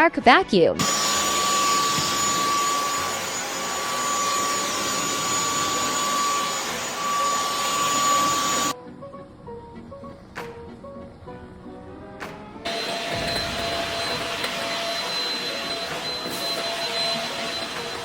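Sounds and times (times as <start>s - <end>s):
vacuum cleaner motor whining: 0.8s - 8.8s, 12.6s - 18.0s.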